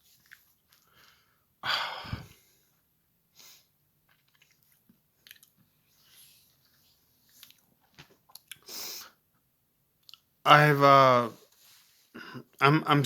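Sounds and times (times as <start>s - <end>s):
loud breath: 0.9s - 2.6s
wet mouth clicks and smacks: 4.1s - 5.6s, 8.3s - 8.7s, 10.0s - 10.3s.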